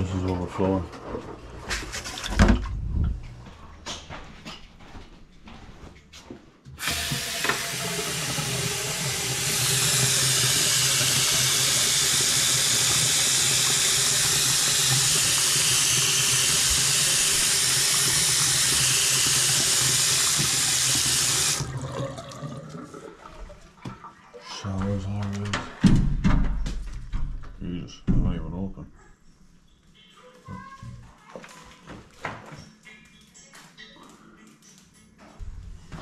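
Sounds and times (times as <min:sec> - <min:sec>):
tap water running into sink: 0:06.8 - 0:24.1.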